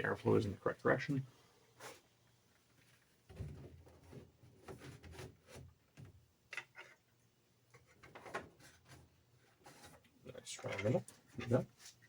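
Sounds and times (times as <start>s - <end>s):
plastic parts clicking and rubbing: 2.8s - 7.0s, 9.7s - 12.0s.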